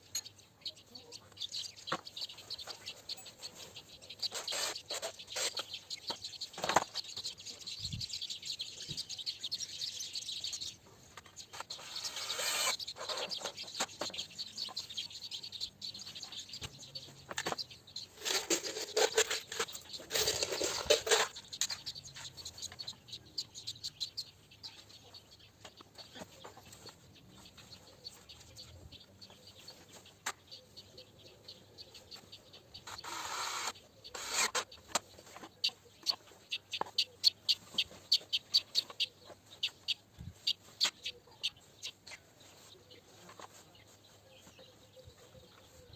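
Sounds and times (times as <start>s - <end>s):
scraping or rustling: 3.4s - 5.8s, 11.4s - 14.3s, 17.4s - 22.4s.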